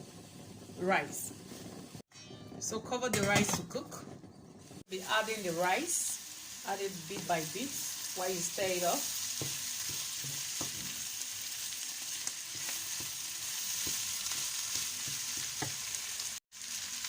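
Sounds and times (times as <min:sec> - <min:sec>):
rice sizzling in a pan: 0:00.0 - 0:02.1, 0:04.6 - 0:17.0.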